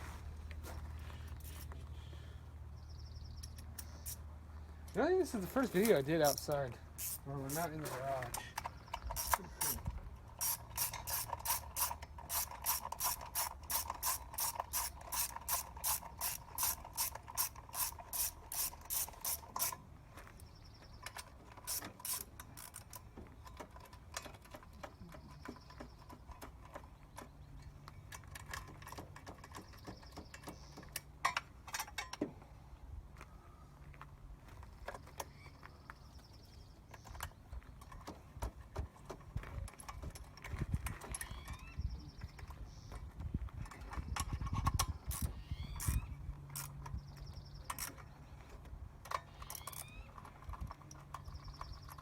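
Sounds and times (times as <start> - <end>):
ratchet wrench clicking: 6.2 - 7.7, 8.3 - 19.8, 21.1 - 23.1, 44.2 - 46.9.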